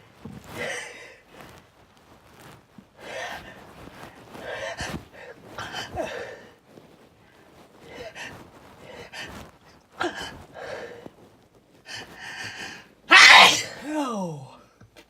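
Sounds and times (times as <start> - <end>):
person gasping and sneezing: 12.0 - 14.5.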